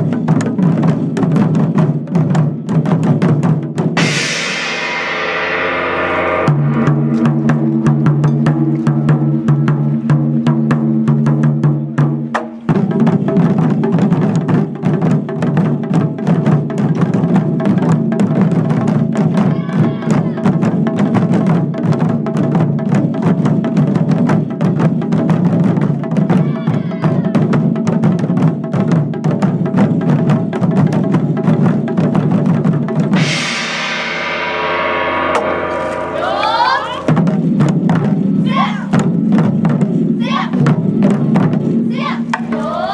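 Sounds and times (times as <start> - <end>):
taiko drums: 0.0 - 42.9
steady held tones: 4.0 - 8.8, 33.2 - 39.2.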